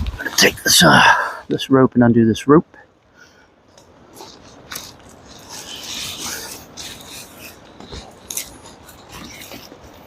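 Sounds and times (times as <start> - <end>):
rope scraping: 3.8 - 10.0.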